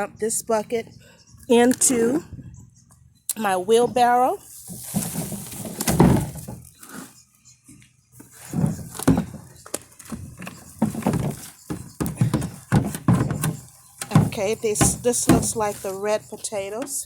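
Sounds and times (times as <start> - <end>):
soil and potatoes thudding: 4.6 - 6.7, 8.3 - 9.5, 10.1 - 16.1.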